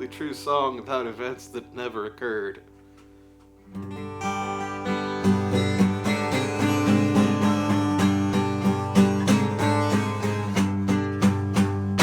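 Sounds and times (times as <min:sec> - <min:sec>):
strummed acoustic guitar: 0:02.8 - 0:12.0.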